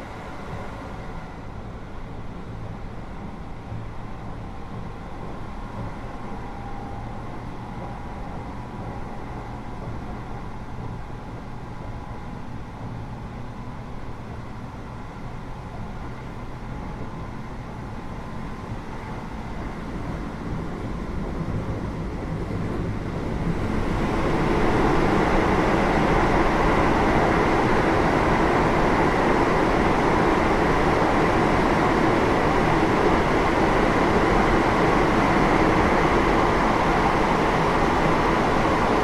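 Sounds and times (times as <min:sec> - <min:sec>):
electric train running: 0:17.8 - 0:39.0.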